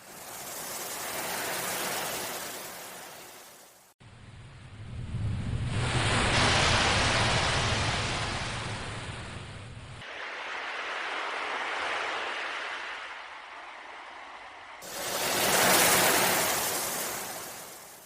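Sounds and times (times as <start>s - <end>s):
ocean waves surging: 5.7s - 9.3s, 10.0s - 18.0s.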